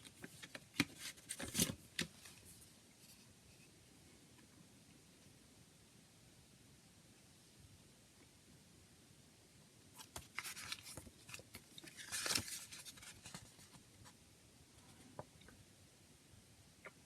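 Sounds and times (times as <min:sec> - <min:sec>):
cd case clicks and rustles: 0:00.0 - 0:02.3, 0:10.0 - 0:13.5.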